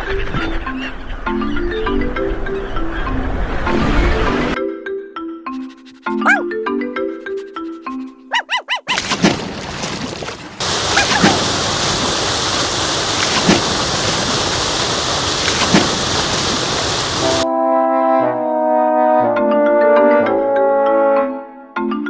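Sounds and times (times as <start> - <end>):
water rushing and splashing: 9.0 - 17.4.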